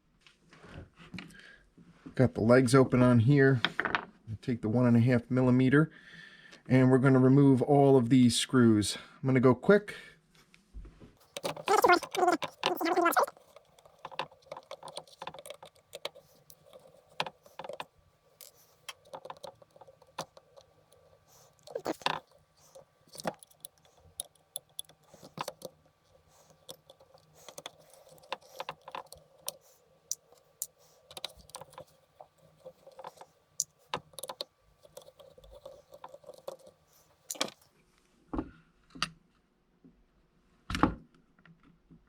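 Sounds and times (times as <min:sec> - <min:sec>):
screwdriver and tweezers clicking: 0:11.2 - 0:37.6.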